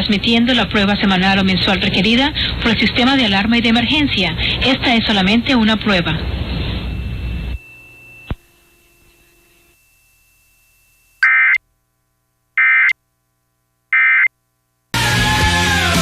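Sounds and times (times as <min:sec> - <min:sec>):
digital data tone bursts: 0:06.8 - 0:11.6
loud music: 0:15.0 - 0:16.0.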